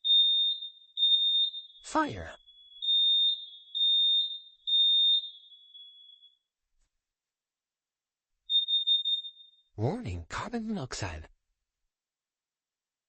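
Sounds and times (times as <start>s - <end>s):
smoke alarm high-pitched beeps: 0.0s - 6.5s, 8.5s - 9.8s.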